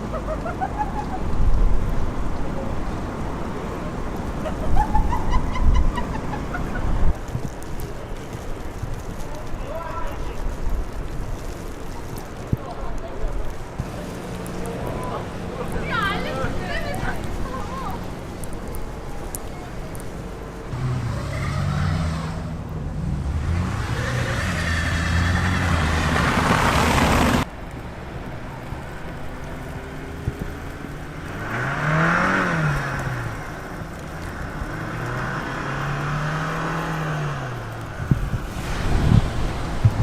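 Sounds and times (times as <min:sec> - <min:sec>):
cars driving past: 0:13.8 - 0:40.0.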